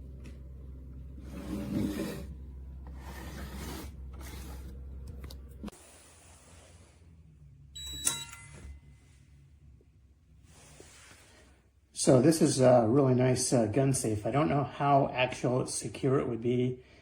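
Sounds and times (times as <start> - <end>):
low hum: 0.0 - 11.2.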